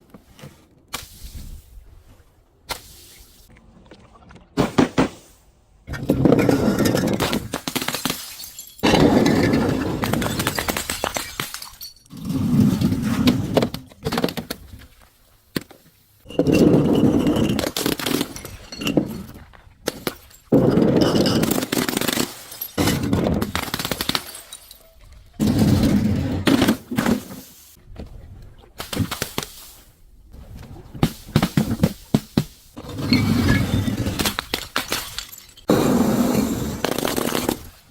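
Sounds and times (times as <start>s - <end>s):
glass shattering and crunching: 6.4s - 12.3s, 16.3s - 25.9s, 33.1s - 35.8s.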